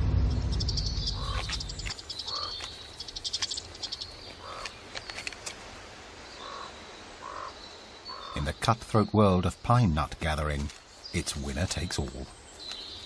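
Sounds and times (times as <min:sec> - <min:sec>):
low rumble: 0:00.0 - 0:02.4
short chirp-like calls: 0:00.5 - 0:05.5, 0:06.1 - 0:08.4.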